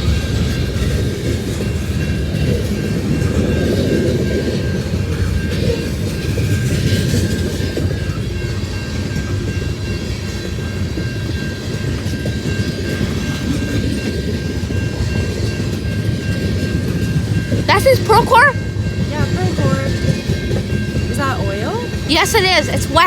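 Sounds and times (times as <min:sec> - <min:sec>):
freight train wheels rumbling on rail: 0:00.0 - 0:23.0.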